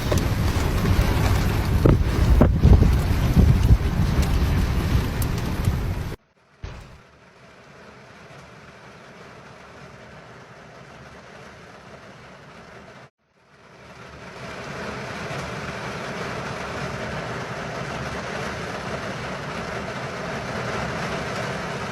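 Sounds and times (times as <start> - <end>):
rushing water: 0.0 - 7.0.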